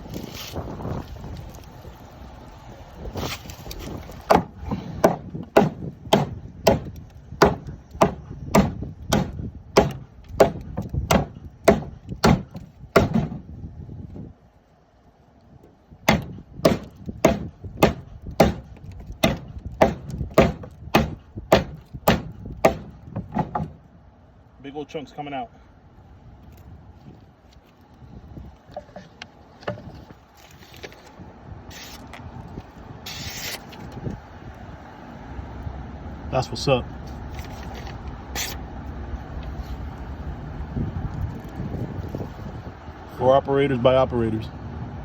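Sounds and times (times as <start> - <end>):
knife chopping wood: 3.2 - 13.4, 16.1 - 23.8.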